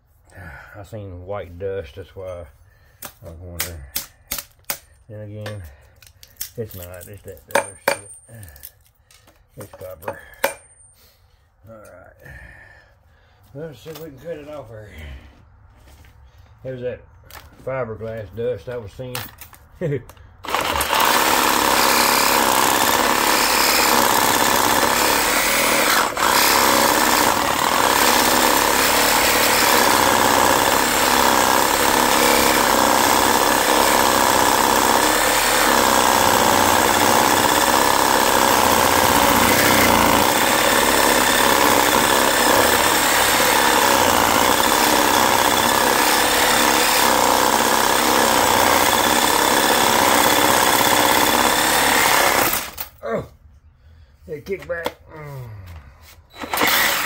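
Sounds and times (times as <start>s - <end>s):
reciprocating saw cutting: 20.4s - 52.8s.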